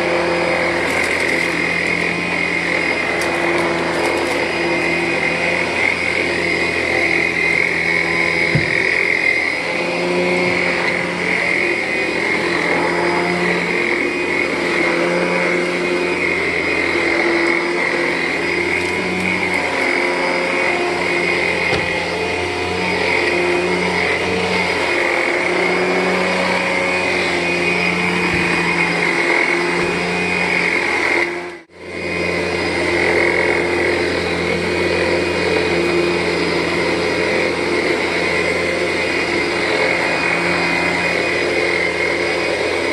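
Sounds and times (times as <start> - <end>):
vacuum cleaner running: 0.0 - 42.9.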